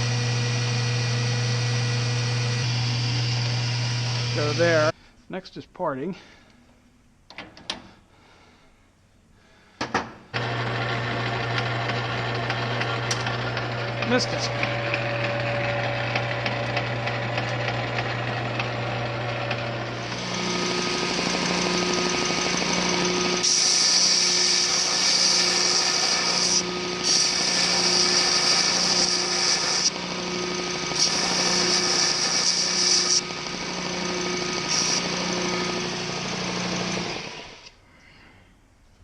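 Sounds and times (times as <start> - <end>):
lathe motor hum: 0.0 - 4.9, 10.4 - 37.7
hissing cutting noise: 2.6 - 4.9, 12.8 - 37.7.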